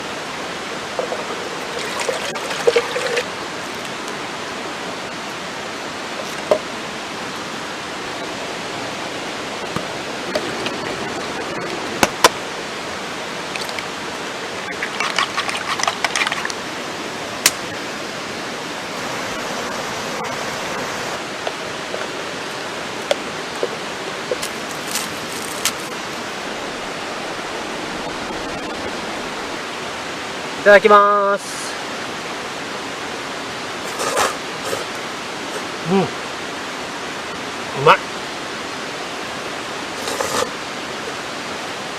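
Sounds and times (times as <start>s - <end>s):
wood fire hissing: 5.2s - 29.6s
small crackles: 24.3s - 26.1s.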